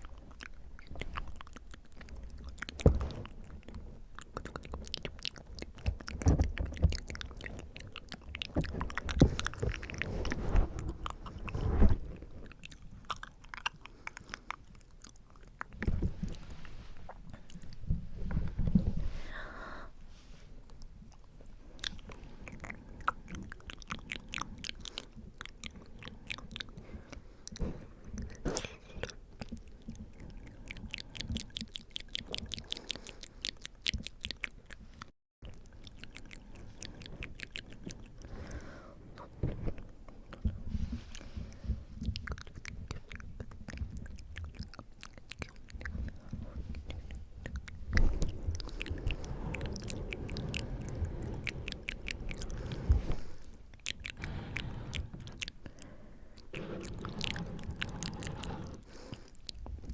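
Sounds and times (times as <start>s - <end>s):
tongue and lip clicks: 0.0s - 16.4s, 20.7s - 38.4s, 40.1s - 59.9s
breath blowing on microphone: 47.9s - 55.4s.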